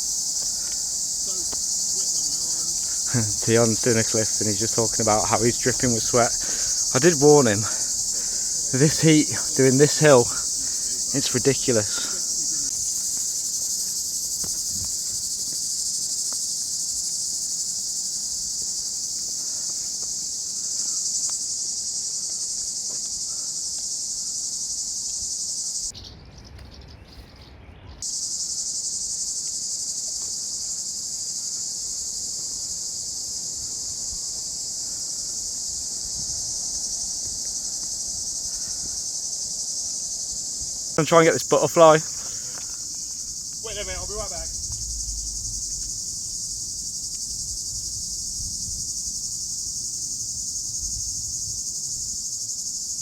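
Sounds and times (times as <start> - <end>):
cicadas buzzing: 0.0 - 27.2, 28.0 - 53.0
low rumble: 44.5 - 47.9.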